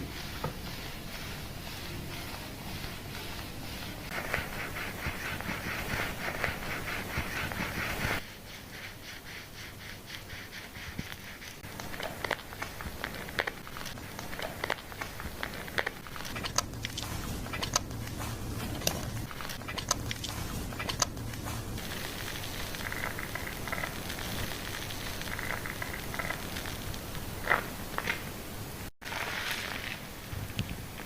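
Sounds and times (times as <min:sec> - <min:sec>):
shampoo lather crackling in hair: 0:00.0 - 0:28.2, 0:29.0 - 0:30.3
foam crackles and pops: 0:11.6 - 0:28.4, 0:29.0 - 0:31.0.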